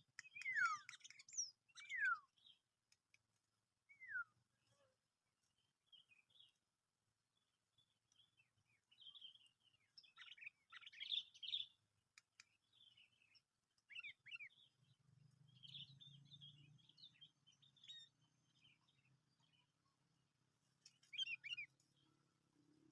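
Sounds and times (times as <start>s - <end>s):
bird chirping calls: 0.2s - 2.6s, 8.2s - 19.8s, 20.8s - 22.1s.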